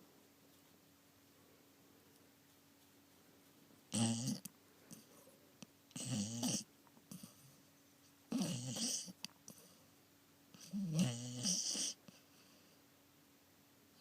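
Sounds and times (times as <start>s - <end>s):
dog snoring: 3.9s - 5.2s, 5.9s - 7.6s, 8.3s - 9.8s, 10.5s - 12.5s.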